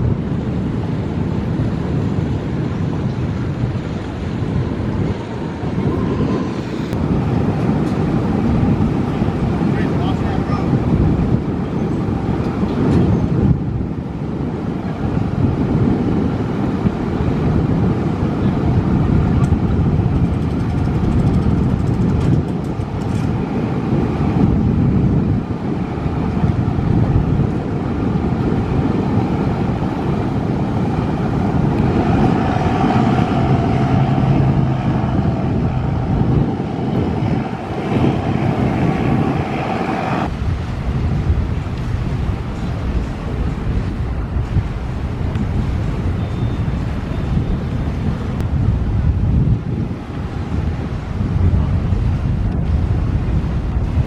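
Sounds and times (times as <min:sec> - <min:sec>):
wind buffeting microphone: 0:00.0 - 0:54.0
engine running: 0:25.7 - 0:40.6.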